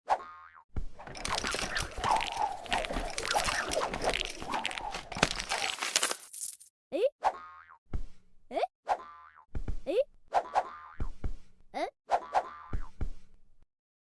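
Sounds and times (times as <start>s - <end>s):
crunching and crackling: 1.0s - 6.7s.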